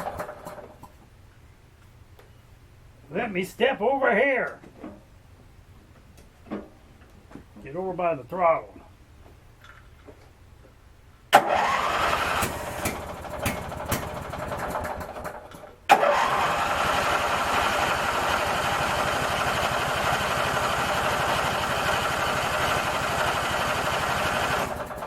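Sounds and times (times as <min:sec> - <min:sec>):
mower engine cranking and sputtering: 0:00.0 - 0:01.0, 0:11.4 - 0:25.0.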